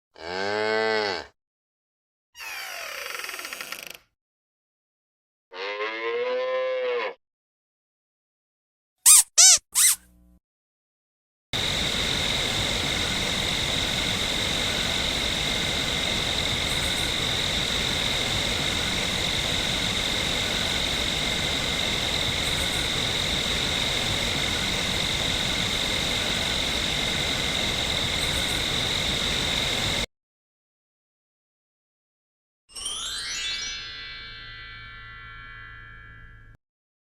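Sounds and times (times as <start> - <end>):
insect chorus trilling: 11.6 - 30.1.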